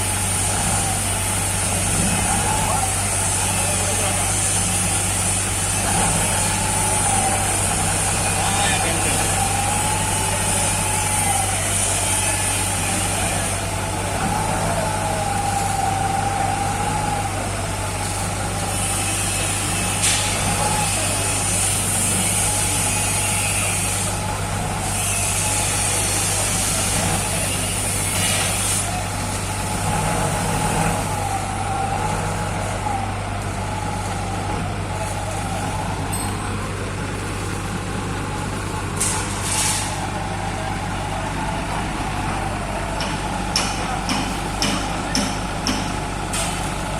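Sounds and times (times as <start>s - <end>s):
loader engine running: 0.0s - 46.9s
sharp knocks: 43.0s - 46.0s.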